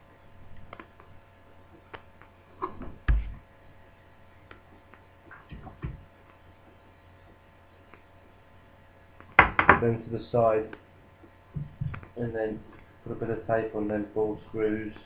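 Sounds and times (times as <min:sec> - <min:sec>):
knocks on plastic: 0:09.4 - 0:09.8.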